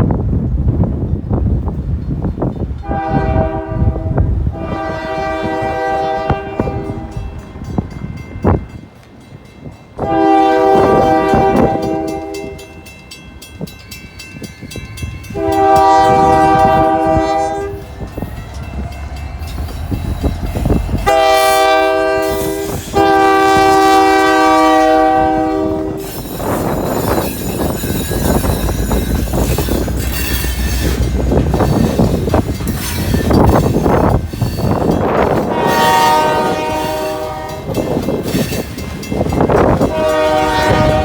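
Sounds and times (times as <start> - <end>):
wind buffeting microphone: 0.0 - 41.0
locomotive air horn blasts: 2.8 - 7.5, 10.0 - 12.9, 15.3 - 18.2, 20.3 - 27.8, 34.6 - 38.0, 39.5 - 41.0.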